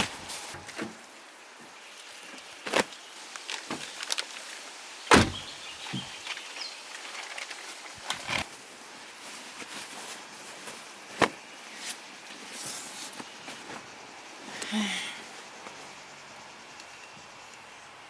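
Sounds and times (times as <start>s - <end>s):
loud thump: 5.1s - 5.5s
knocks and clunks in a car: 5.1s - 6.1s.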